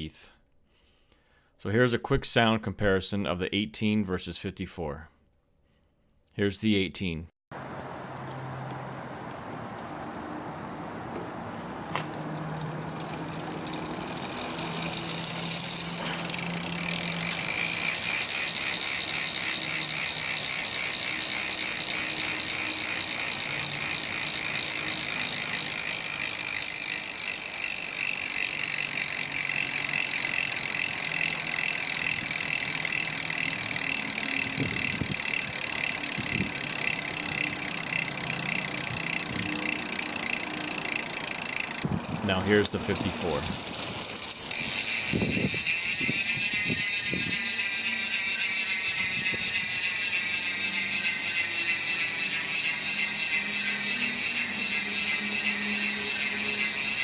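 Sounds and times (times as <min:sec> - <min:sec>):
bicycle hub freewheel clicking buzz: 0:11.9 - 0:57.0.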